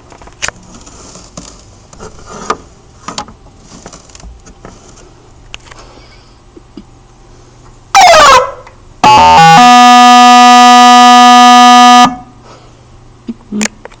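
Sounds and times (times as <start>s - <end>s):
steady buzzy tone: 9.2s - 12.3s.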